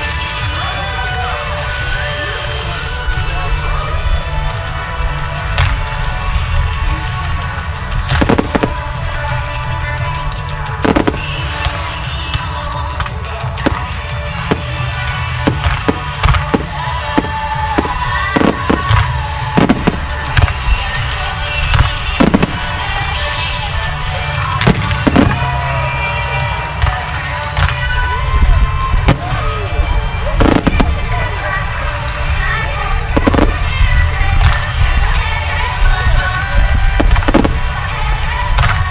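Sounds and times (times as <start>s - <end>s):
music playing: 0.0s - 38.9s
fireworks booming: 5.5s - 9.4s, 10.7s - 12.0s, 13.6s - 25.8s, 30.4s - 31.7s, 33.1s - 34.7s, 37.0s - 38.9s.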